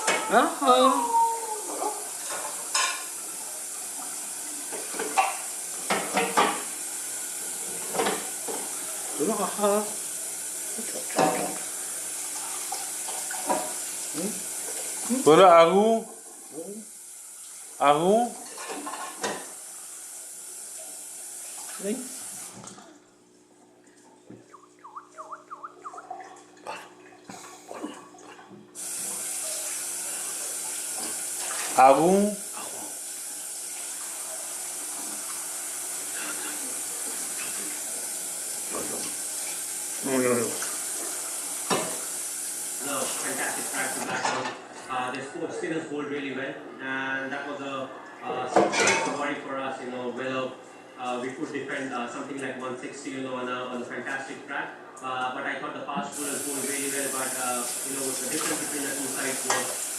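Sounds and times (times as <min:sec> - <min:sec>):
tap water running: 0:00.0 - 0:45.0, 0:55.9 - 0:59.9
steady hiss: 0:28.8 - 0:44.3, 0:56.1 - 0:59.9.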